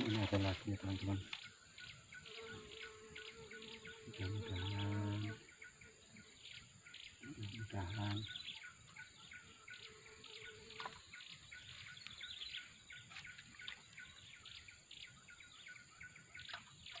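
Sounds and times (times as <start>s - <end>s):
small birds chirping: 0.0s - 17.0s
high-pitched insect buzz: 2.0s - 5.4s.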